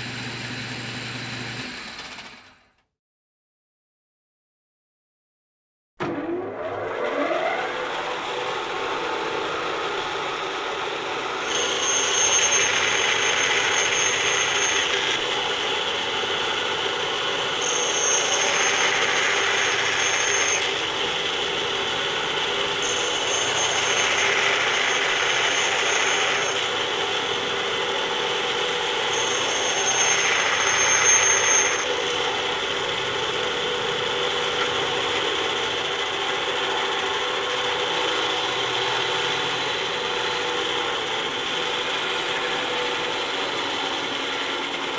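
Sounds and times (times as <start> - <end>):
electric saw running: 0.0 - 2.7, 6.0 - 44.9.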